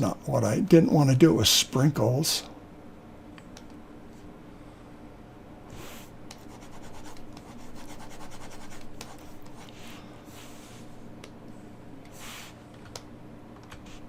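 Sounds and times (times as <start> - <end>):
stylus scratching on a tablet: 5.7 - 10.9.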